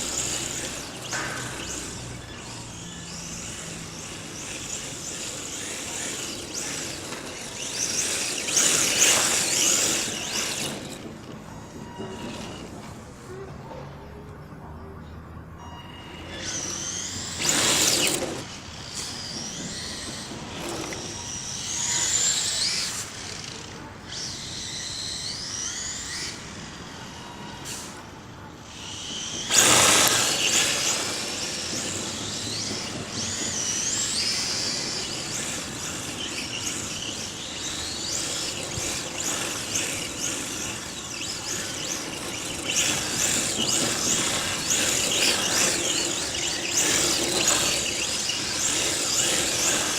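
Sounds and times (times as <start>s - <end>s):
rc car motor whine: 0.0s - 49.9s.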